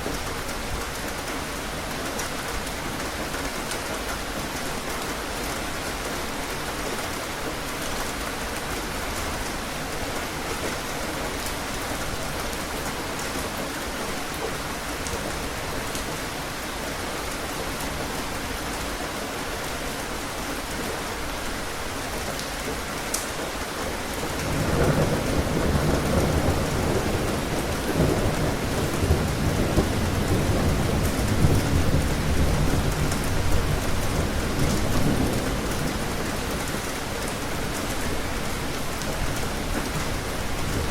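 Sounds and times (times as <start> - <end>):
steady rain falling: 0.0 - 40.9
thunder rumble: 24.4 - 36.4.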